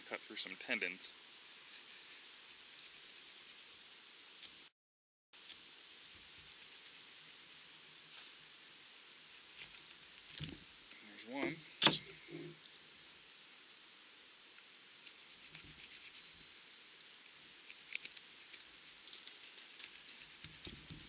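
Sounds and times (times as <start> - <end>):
faint background hiss: 0.0 - 4.7, 5.4 - 21.0.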